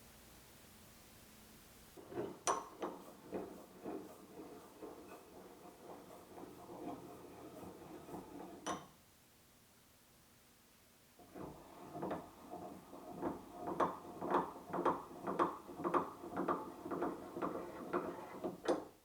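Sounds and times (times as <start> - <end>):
bench vise metallic clacks: 11.2 - 19.0.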